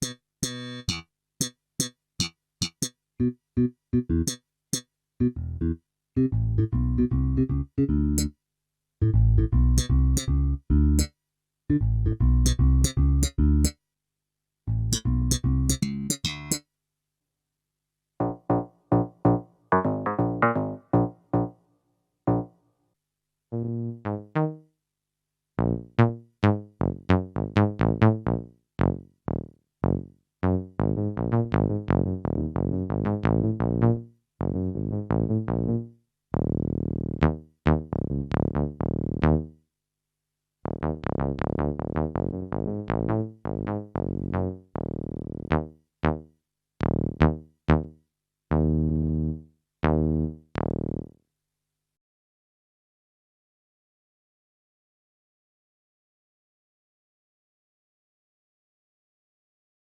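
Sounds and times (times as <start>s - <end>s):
digital keyboard bass notes: 0.0s - 1.0s, 2.2s - 4.4s, 5.2s - 8.3s, 9.0s - 11.1s, 11.7s - 13.7s, 14.7s - 16.6s, 18.2s - 21.5s, 22.3s - 22.5s, 23.6s - 24.6s, 30.5s - 35.8s, 36.4s - 39.5s, 40.7s - 46.2s, 46.8s - 47.9s, 48.5s - 51.0s.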